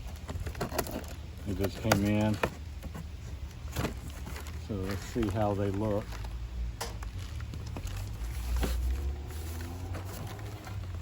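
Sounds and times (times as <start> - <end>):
knocks and rustling: 0.0 - 11.0.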